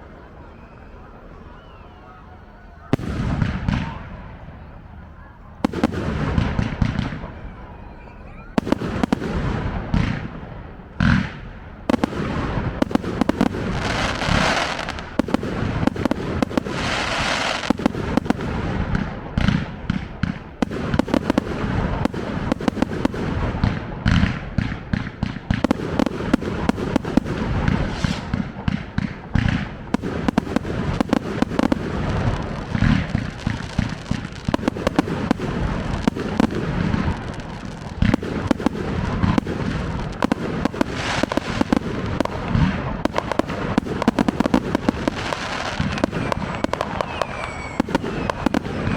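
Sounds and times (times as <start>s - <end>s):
fireworks bangs: 0.0s - 48.9s
hissing crackle of fireworks: 0.0s - 48.9s.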